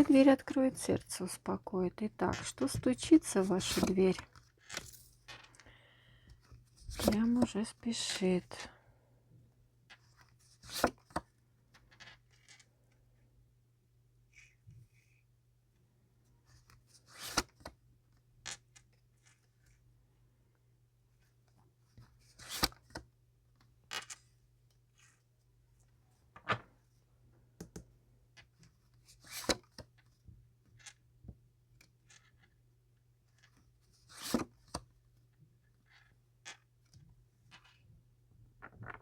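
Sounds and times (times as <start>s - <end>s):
cards rustling and snapping: 3.6s - 5.6s, 6.8s - 7.5s, 29.2s - 29.9s, 34.1s - 34.8s.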